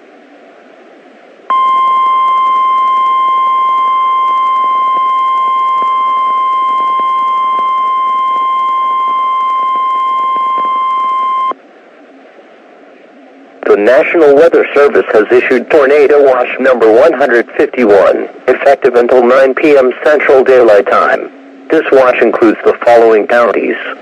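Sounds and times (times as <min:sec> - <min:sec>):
faint radio static hiss: 0:00.0 - 0:24.0
steady high alarm tone: 0:01.5 - 0:11.6.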